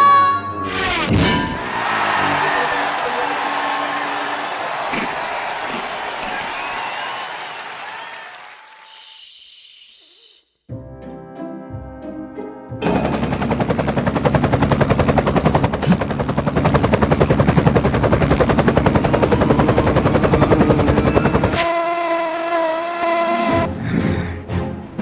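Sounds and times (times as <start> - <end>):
fly wings buzzing: 21.2 - 23.7.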